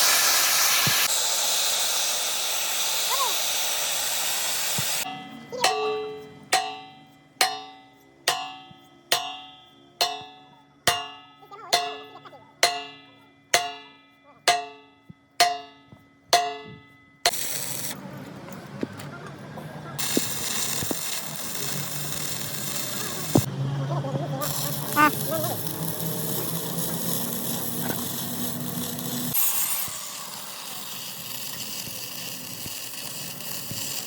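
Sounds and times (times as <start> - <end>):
steady hiss: 0.0 - 5.1
hammer striking steel: 5.0 - 18.0.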